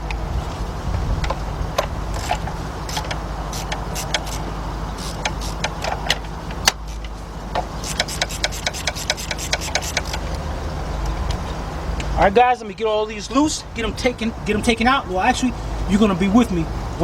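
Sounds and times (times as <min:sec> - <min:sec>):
steady low hum: 0:00.0 - 0:17.0
ratchet clicking: 0:01.8 - 0:07.1, 0:07.8 - 0:10.4.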